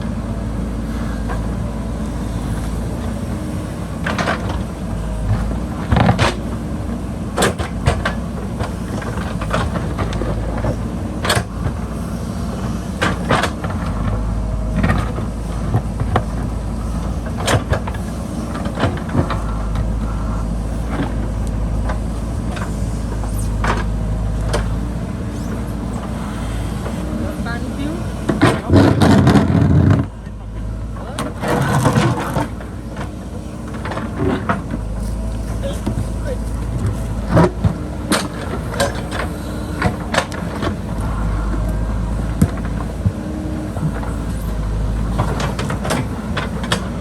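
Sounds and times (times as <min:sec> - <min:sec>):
diesel engine under load: 0:00.0 - 0:47.0.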